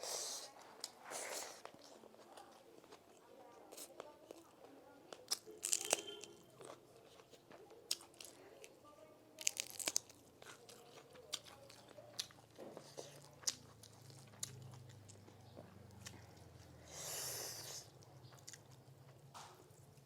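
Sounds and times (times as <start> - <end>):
person chewing crunchy food: 5.1 - 8.4, 9.4 - 20.0.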